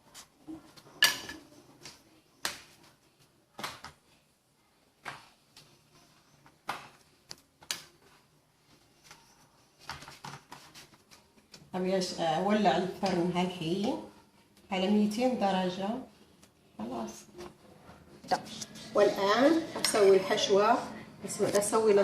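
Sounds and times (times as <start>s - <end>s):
metal trays and utensils clattering: 0.8s - 1.7s.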